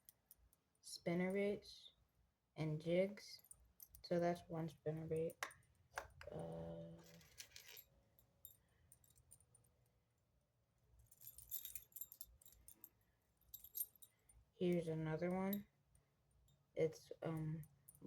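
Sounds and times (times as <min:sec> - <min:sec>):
metal lures jingling: 0:11.1 - 0:12.9, 0:13.5 - 0:14.2.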